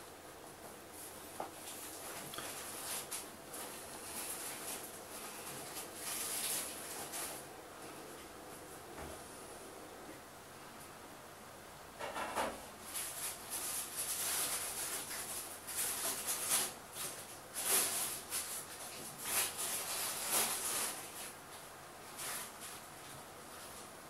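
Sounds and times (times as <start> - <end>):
rustling and rubbing: 0.5 - 9.4, 12.2 - 24.0.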